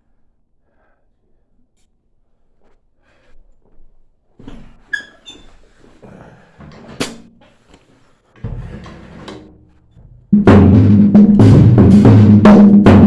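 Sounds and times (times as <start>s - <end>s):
drum kit playing: 8.4s - 13.0s.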